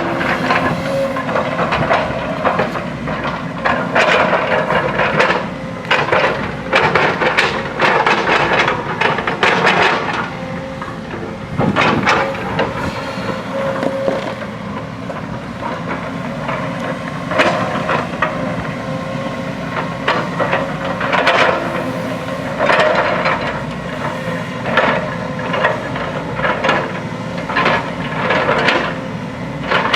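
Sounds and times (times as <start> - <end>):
bucket scraping earth and rock: 0.0 - 3.2, 8.2 - 24.7
diesel engine under load: 0.0 - 29.9.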